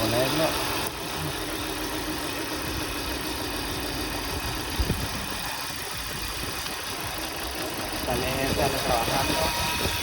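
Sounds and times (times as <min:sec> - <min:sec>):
car engine idling unevenly: 0:00.0 - 0:09.4.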